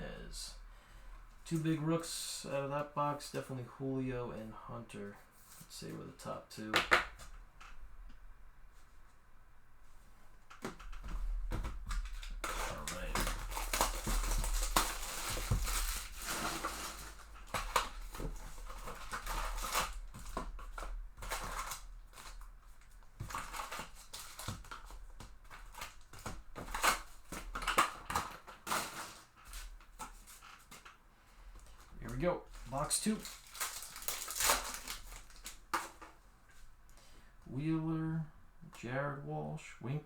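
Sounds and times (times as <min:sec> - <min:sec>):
plastic and foil packs crinkling: 0:10.6 - 0:36.7.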